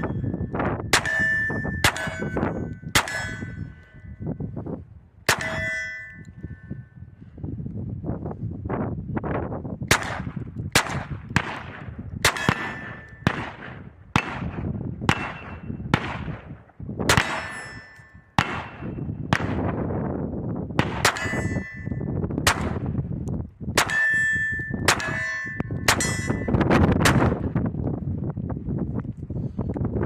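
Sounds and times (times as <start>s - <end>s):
metallic clang ringing: 0.0s - 4.3s, 5.3s - 7.0s, 17.2s - 19.1s, 21.1s - 22.2s, 23.8s - 26.7s
pistol shots: 0.9s - 3.5s, 9.9s - 17.7s, 18.4s - 19.8s, 20.8s - 21.5s, 22.4s - 22.9s, 23.8s - 24.2s, 24.8s - 27.5s.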